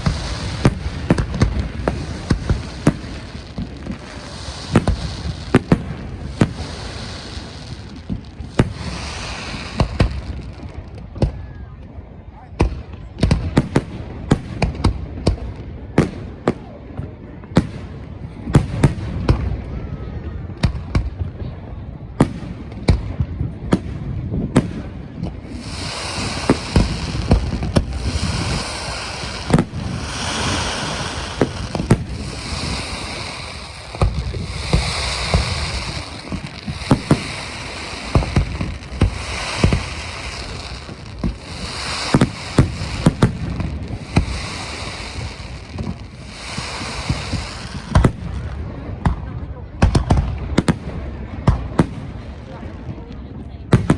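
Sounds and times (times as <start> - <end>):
dense fireworks crackling: 0.0 - 53.9
fireworks bangs and booms: 0.0 - 53.9.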